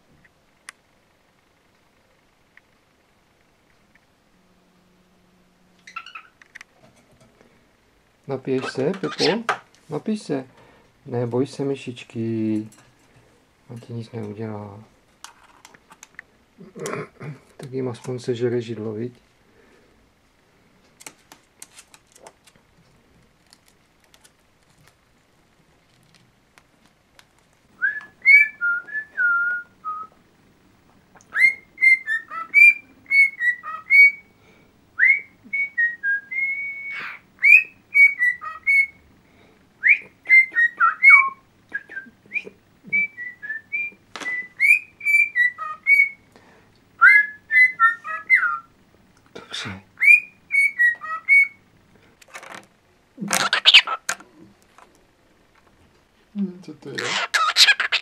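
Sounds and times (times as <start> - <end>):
cockatiel whistling: 27.8 - 30.1, 31.3 - 34.2, 35.0 - 39.0, 39.8 - 46.2, 47.0 - 48.7, 50.0 - 51.6, 53.4 - 54.0, 57.0 - 58.0.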